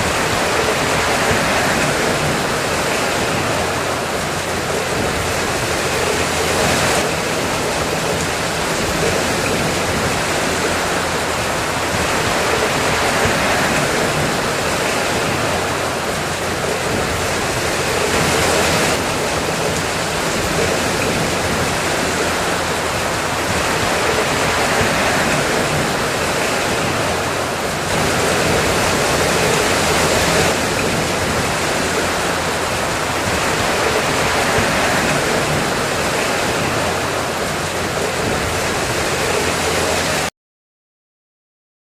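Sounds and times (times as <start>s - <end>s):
steady rain hissing: 0.0s - 40.3s.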